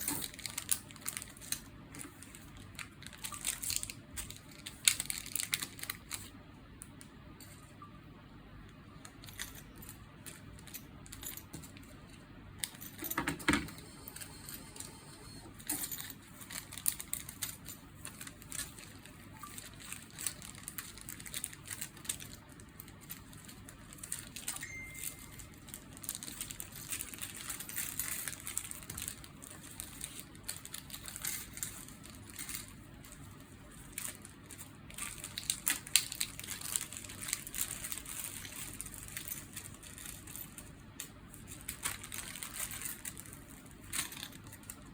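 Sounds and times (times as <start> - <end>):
packaging crinkling: 0.0 - 6.4, 12.6 - 44.9.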